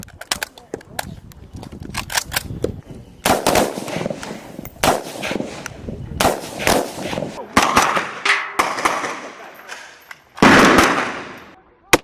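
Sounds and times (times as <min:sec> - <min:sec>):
gunshots with echo: 0:03.2 - 0:05.6, 0:06.2 - 0:09.5, 0:10.4 - 0:11.6.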